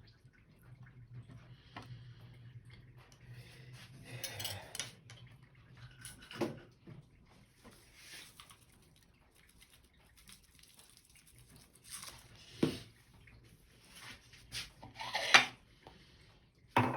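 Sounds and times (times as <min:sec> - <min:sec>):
kitchenware clicks and clatter: 0:04.2 - 0:05.1.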